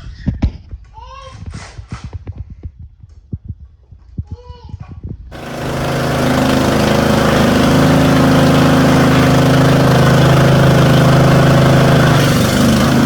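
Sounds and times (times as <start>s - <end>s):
riding mower engine running: 5.3s - 13.0s.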